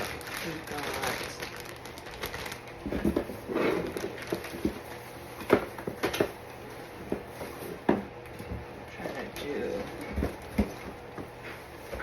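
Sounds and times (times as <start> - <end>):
packaging rustling: 0.0 - 7.9.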